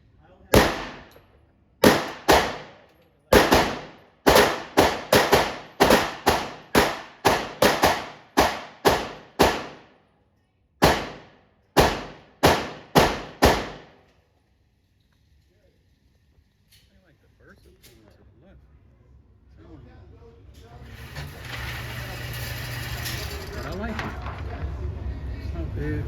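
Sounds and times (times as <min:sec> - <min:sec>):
pistol shots: 0:00.5 - 0:01.2, 0:01.8 - 0:09.9, 0:10.8 - 0:14.0.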